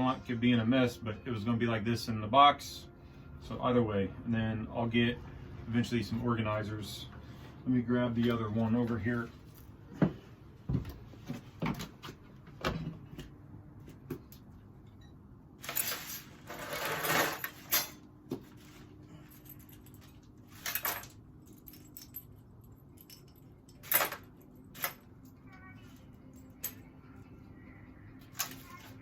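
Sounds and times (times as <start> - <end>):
rustling and scraping: 15.6 - 21.2.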